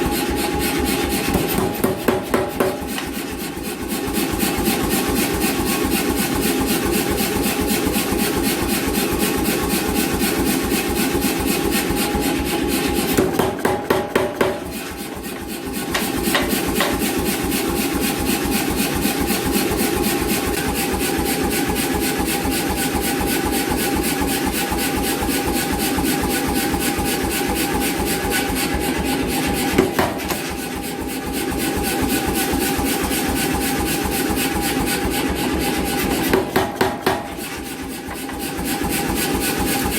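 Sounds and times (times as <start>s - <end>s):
power hammer striking hot steel: 0.2s - 4.8s, 13.1s - 17.3s, 29.7s - 30.7s, 36.0s - 39.4s.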